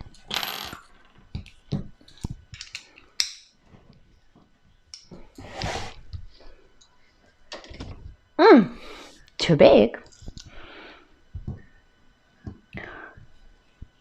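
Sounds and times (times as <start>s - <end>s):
rustling scrape: 5.4s - 6.0s.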